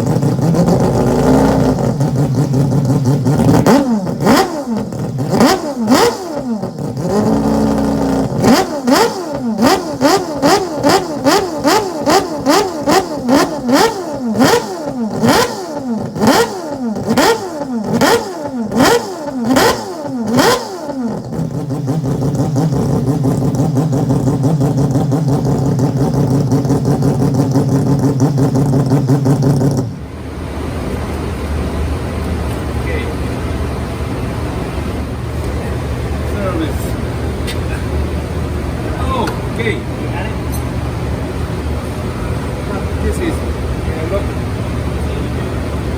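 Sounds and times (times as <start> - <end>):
rotary engine revving: 0.0 - 30.9
engine idling: 0.0 - 45.9.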